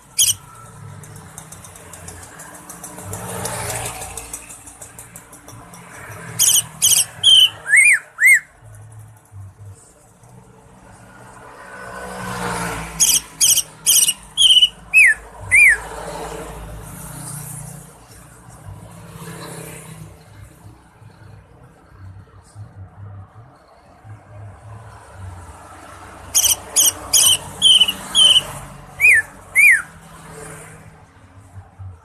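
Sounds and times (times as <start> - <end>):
bird singing: 0.0 - 0.5, 6.4 - 8.5, 13.0 - 15.9, 26.4 - 29.9.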